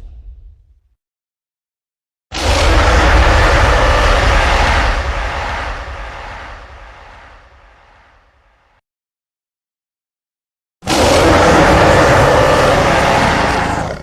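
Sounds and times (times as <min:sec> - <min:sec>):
deep monster roar: 0:02.3 - 0:07.6, 0:10.8 - 0:14.0.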